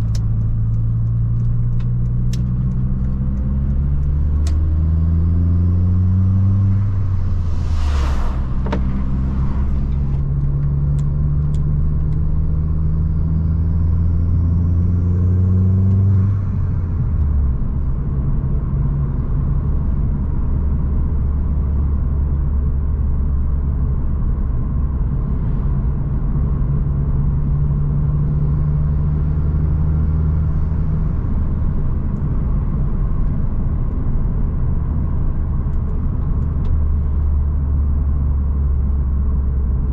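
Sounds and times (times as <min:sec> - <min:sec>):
car engine running: 0:00.0 - 0:12.5.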